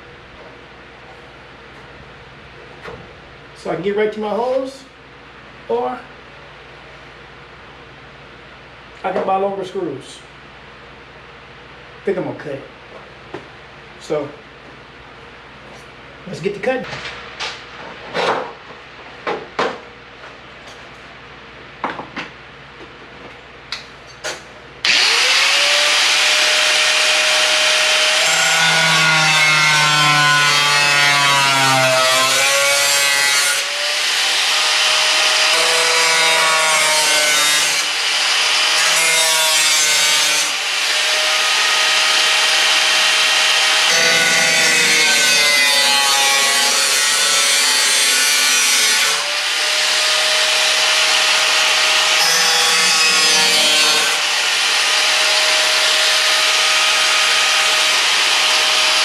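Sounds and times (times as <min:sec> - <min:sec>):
power cutting tool whining: 0:24.8 - 0:32.8, 0:40.4 - 0:46.8, 0:49.2 - 0:59.0.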